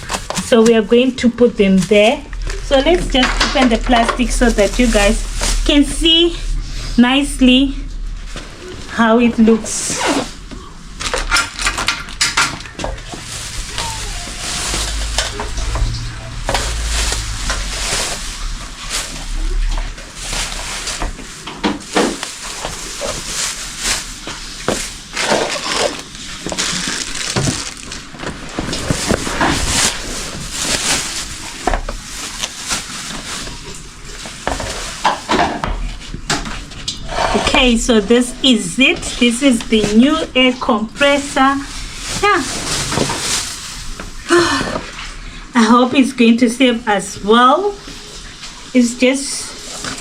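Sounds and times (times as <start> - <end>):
plastic wrapping crinkling: 0.0 - 36.9, 37.6 - 45.0
low rumble of handling: 12.6 - 21.5.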